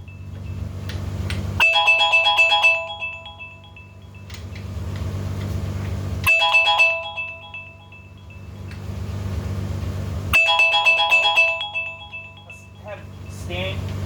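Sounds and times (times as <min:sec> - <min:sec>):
phone alarm chiming melody: 0:00.0 - 0:00.8, 0:01.6 - 0:04.6, 0:06.3 - 0:09.3, 0:10.4 - 0:13.8.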